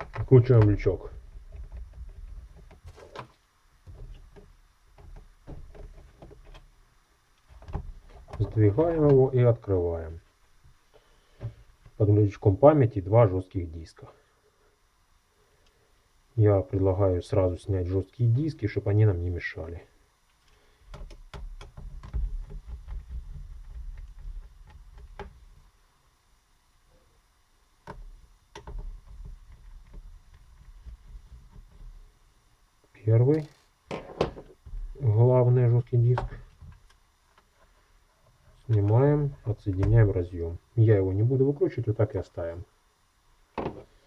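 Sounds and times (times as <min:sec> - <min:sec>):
light clicks and knocks: 0:00.0 - 0:06.8, 0:07.4 - 0:09.4, 0:20.4 - 0:25.7, 0:27.8 - 0:32.2, 0:35.9 - 0:40.2.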